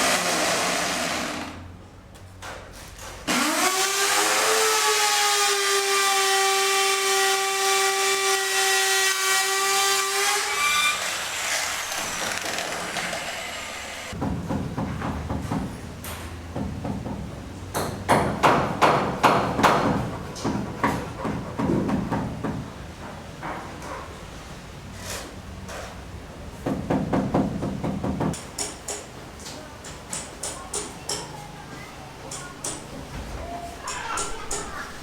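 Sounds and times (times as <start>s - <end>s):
power tool whining: 0.0s - 1.6s, 3.3s - 14.2s
hammering on wood: 14.2s - 15.8s, 16.5s - 23.7s, 26.6s - 29.1s.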